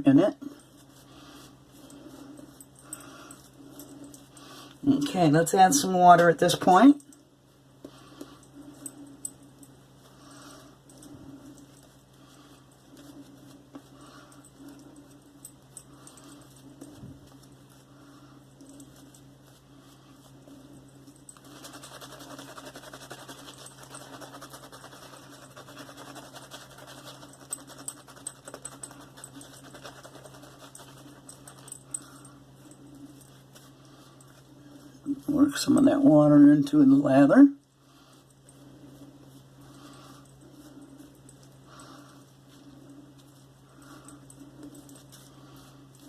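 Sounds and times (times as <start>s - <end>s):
shaving brush lathering soap: 18.8s - 36.0s.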